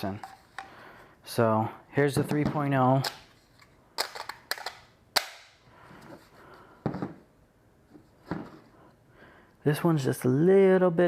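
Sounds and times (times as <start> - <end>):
plastic battery packs clicking: 4.0 - 5.5.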